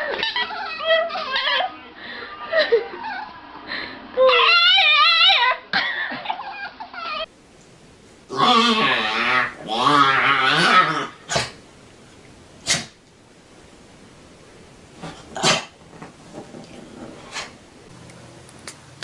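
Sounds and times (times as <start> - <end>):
animal wavering call: 4.2 - 5.6.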